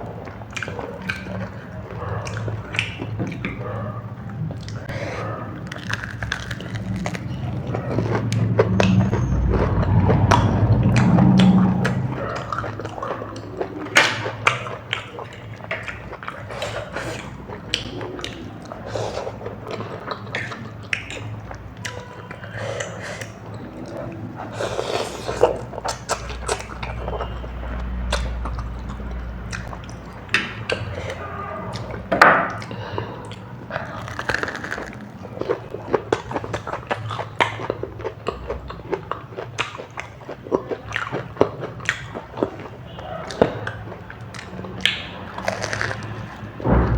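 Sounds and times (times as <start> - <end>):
wet chewing with crackly clicks: 0.0 - 46.6
low rumble: 5.9 - 13.9, 46.6 - 46.9.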